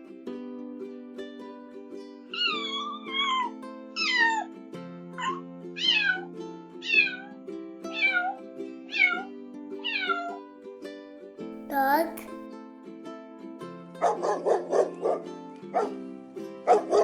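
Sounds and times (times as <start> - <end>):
cat meowing: 6.8 - 7.3, 9.8 - 10.3.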